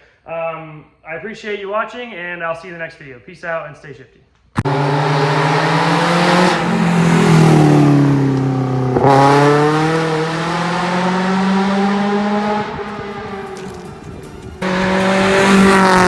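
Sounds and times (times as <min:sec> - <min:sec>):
car engine revving: 0:04.6 - 0:16.0.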